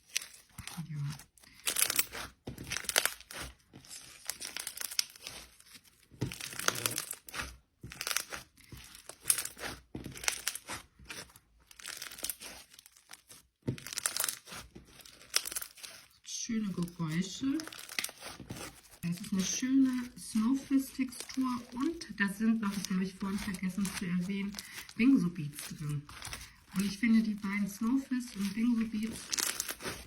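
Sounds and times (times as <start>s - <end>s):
slime crackling and crunching: 0.0s - 30.0s.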